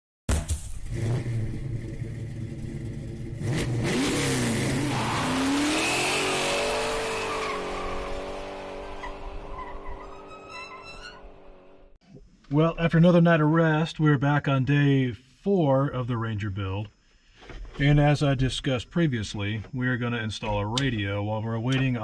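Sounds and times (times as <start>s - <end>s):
car engine revving: 0.8s - 10.4s.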